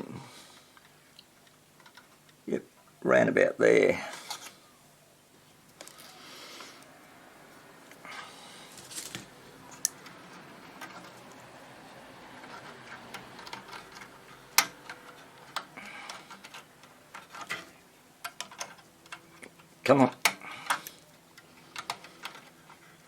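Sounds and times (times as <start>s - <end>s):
small hand tools clicking and tapping: 12.4s - 23.0s.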